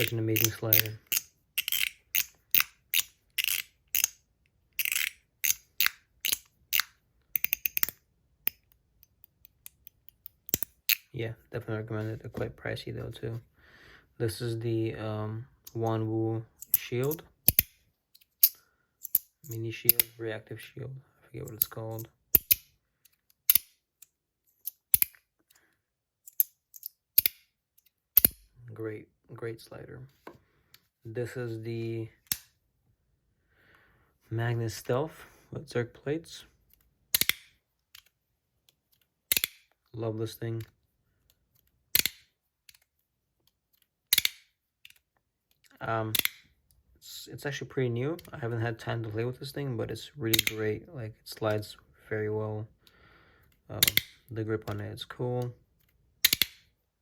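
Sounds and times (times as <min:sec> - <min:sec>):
fidget slider clicking: 0:00.0 - 0:04.2, 0:04.8 - 0:10.7.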